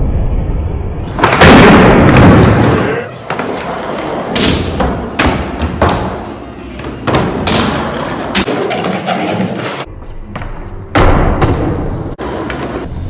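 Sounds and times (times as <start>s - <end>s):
skateboards thudding and slapping: 1.2s - 9.9s, 11.0s - 12.9s
skateboards rolling: 2.4s - 9.9s, 12.2s - 12.9s.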